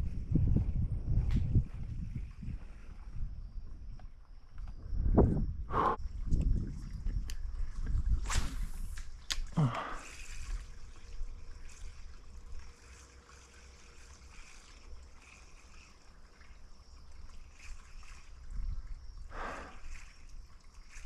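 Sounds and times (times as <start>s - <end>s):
water trickling among rocks: 6.1s - 21.0s.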